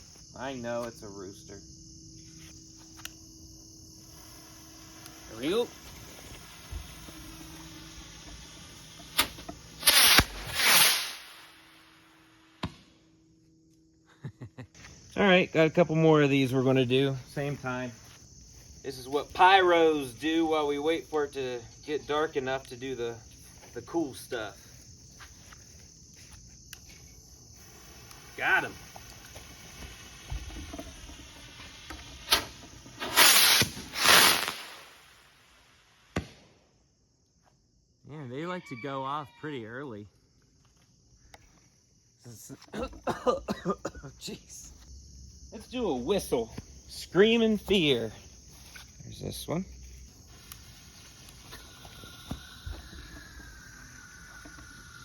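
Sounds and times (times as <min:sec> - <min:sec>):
crickets chirping: 0:00.0 - 0:55.0
firework rocket launching: 0:03.9 - 0:13.0, 0:27.6 - 0:36.6, 0:50.2 - 0:55.0
firework bang: 0:05.5 - 0:13.0, 0:27.7 - 0:35.2, 0:36.1 - 0:36.6
sharp crack: 0:09.0 - 0:11.9, 0:32.2 - 0:35.3, 0:36.1 - 0:36.6.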